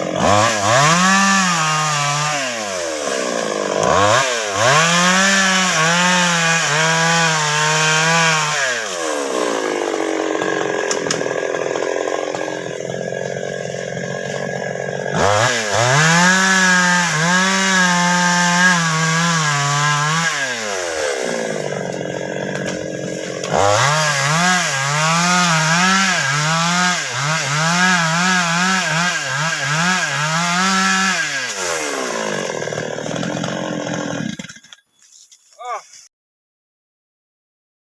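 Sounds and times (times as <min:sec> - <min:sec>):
chainsaw cutting wood: 0:00.0 - 0:35.0.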